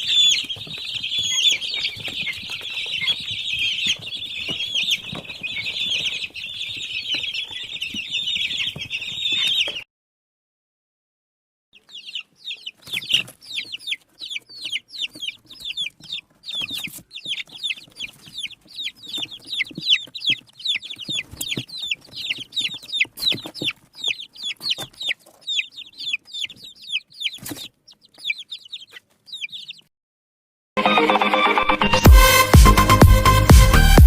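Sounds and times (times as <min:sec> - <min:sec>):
chicks peeping: 0:00.0 - 0:09.8, 0:11.8 - 0:29.9.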